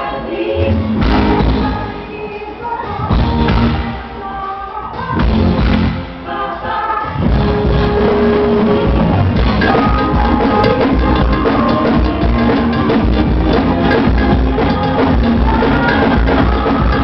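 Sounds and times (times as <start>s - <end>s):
live band playing: 0.0s - 17.0s
drum kit beat: 7.2s - 17.0s.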